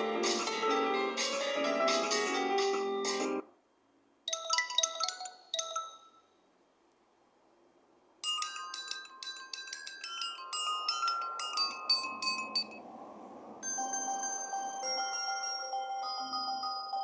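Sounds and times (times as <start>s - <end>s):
phone ringtone melody: 0.0s - 3.4s, 4.3s - 6.3s, 13.6s - 17.0s
short bell-like melody: 13.6s - 17.0s.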